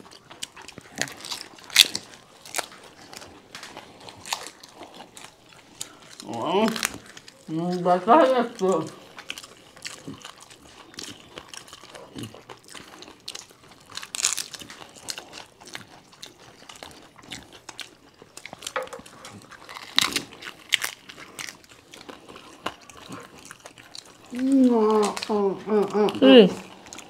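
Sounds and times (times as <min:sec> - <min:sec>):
crisp shells crunching and chewing: 0:00.0 - 0:27.0.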